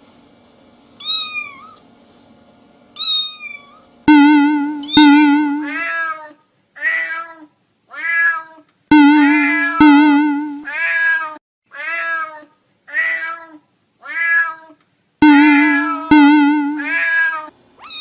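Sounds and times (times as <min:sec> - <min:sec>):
cat meowing: 0:05.8 - 0:08.6, 0:10.7 - 0:14.8, 0:16.8 - 0:18.0.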